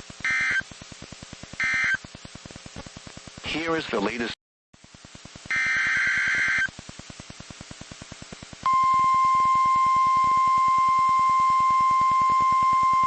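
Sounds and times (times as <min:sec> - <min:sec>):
steady warning alarm tone: 0:00.2 - 0:00.6, 0:01.6 - 0:02.0, 0:05.5 - 0:06.7, 0:08.6 - 0:13.0
data tone burst: 0:01.6 - 0:02.0, 0:05.5 - 0:06.7, 0:08.6 - 0:13.0.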